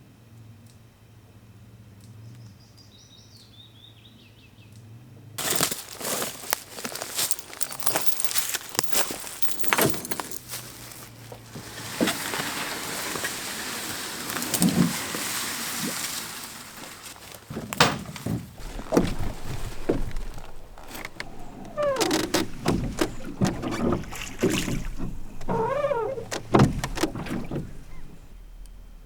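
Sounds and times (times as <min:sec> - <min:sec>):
rowboat and oars knocking: 0:11.4 - 0:28.4.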